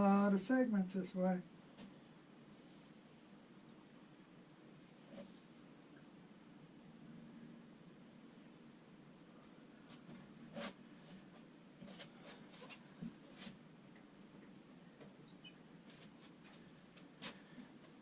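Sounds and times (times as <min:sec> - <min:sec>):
low steady hum: 0:00.0 - 0:18.0
high squeaks: 0:14.0 - 0:15.6.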